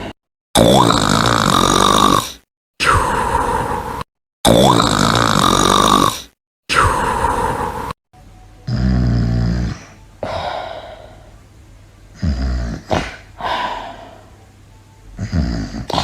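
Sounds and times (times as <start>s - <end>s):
loud rasping snore: 0.0s - 8.0s, 8.6s - 11.1s, 12.1s - 14.1s, 15.2s - 16.0s
breathy out-breath: 9.6s - 11.4s, 12.2s - 14.4s.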